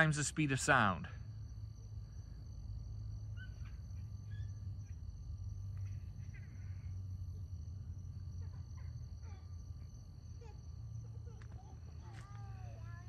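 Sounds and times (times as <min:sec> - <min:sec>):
steady low hum: 0:00.0 - 0:13.0
faint chirping calls: 0:03.2 - 0:07.4.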